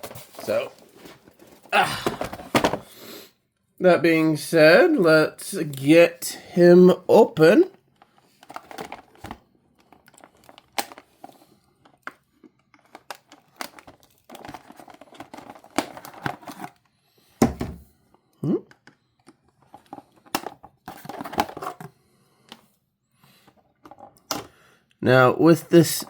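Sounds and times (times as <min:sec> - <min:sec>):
plastic and cardboard crinkling: 0:00.0 - 0:03.0, 0:07.6 - 0:17.8, 0:19.1 - 0:21.9.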